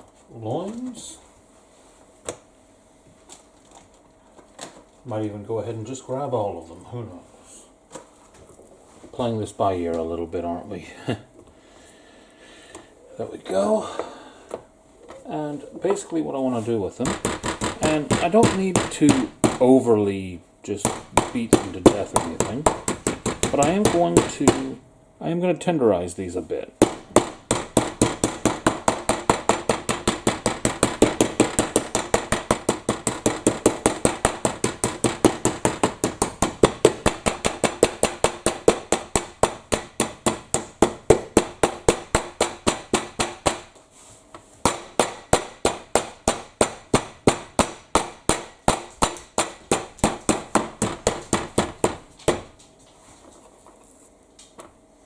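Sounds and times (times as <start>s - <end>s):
meat mallet pounding meat: 16.6s - 20.1s, 20.7s - 24.8s, 26.8s - 43.8s, 44.6s - 52.6s.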